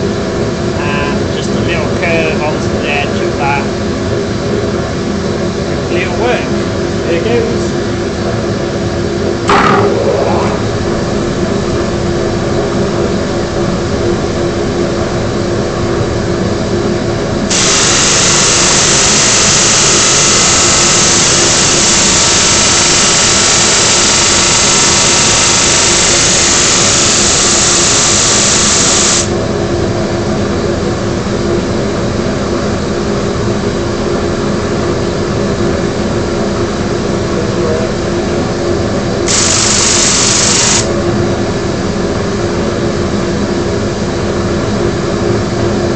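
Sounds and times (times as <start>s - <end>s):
disc sander humming: 17.5s - 29.3s.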